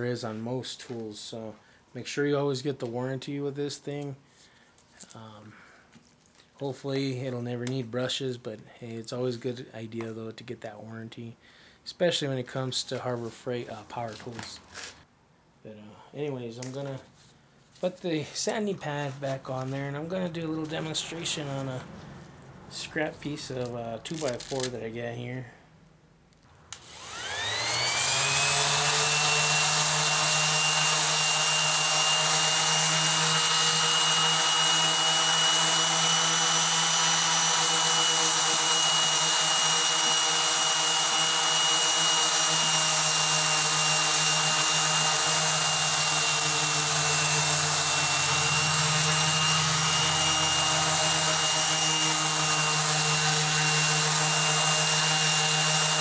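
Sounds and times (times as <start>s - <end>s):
palm sander whining: 17.8s - 25.0s, 26.7s - 56.0s.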